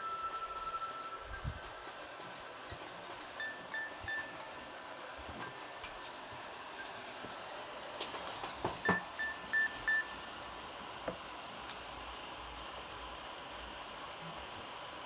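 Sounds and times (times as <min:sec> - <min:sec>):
mobile phone beeps: 0:03.4 - 0:04.5, 0:08.8 - 0:10.2.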